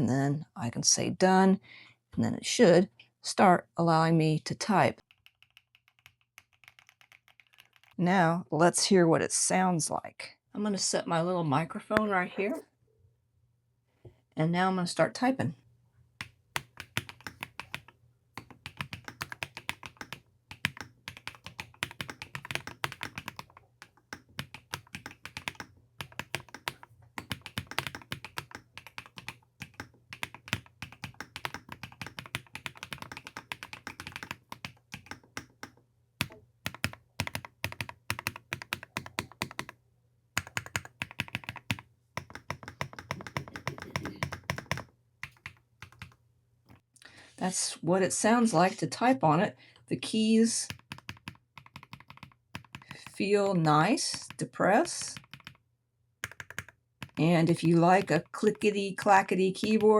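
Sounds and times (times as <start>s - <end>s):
mechanical keyboard typing: 5.0s - 8.0s, 16.2s - 39.8s, 40.4s - 46.2s, 50.7s - 53.0s, 55.0s - 55.6s, 56.2s - 59.9s.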